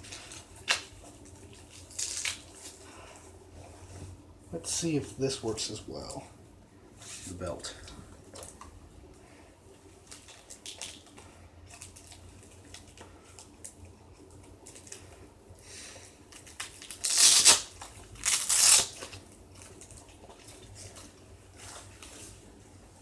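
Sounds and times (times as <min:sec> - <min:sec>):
velcro tearing rips: 0:01.7 - 0:02.7, 0:16.4 - 0:19.2.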